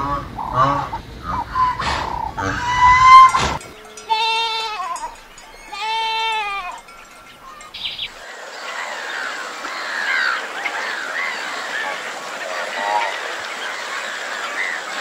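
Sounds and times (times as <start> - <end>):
high chirping calls: 1.2 - 8.8
goat bleating: 2.4 - 7.0.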